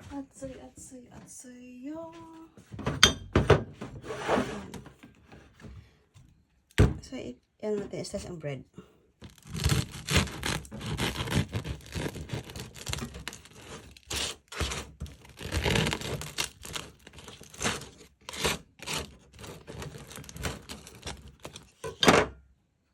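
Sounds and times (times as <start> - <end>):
knife slicing crusty bread: 9.2 - 21.8.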